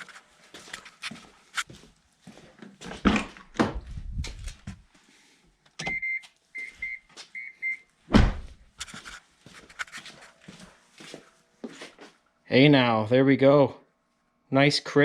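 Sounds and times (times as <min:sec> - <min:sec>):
electronic warning chime beeps: 0:05.8 - 0:07.8
heavy door thud: 0:08.1 - 0:08.6.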